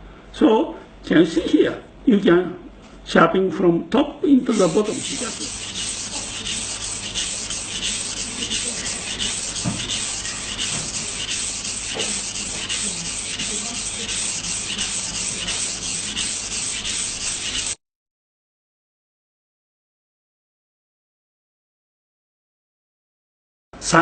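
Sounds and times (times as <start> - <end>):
knife scraping on whetstone: 4.5 - 17.8.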